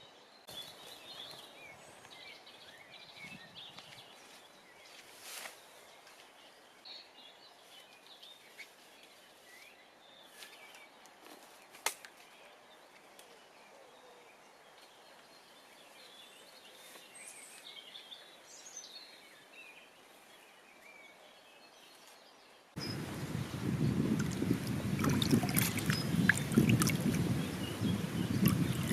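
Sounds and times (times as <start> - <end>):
low steady hiss: 0.0 - 28.9
bird chirps and calls: 22.8 - 28.9.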